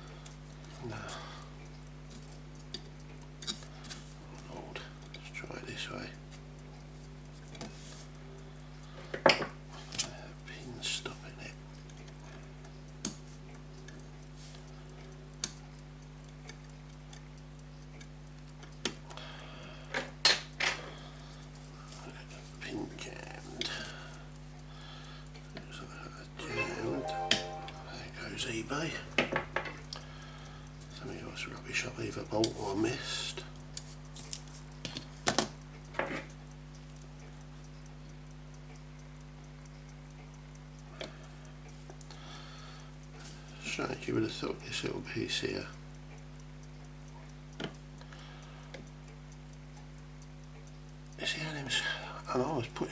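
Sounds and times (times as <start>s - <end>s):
steady electrical hum: 0.0s - 52.9s
pocket watch ticking: 10.8s - 27.8s, 29.8s - 52.9s.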